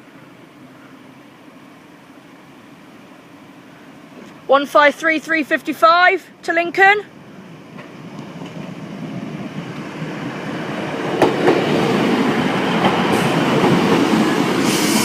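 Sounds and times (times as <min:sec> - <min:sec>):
diesel train approaching: 0:00.0 - 0:15.0
wheels clicking over rail joints: 0:07.7 - 0:08.8.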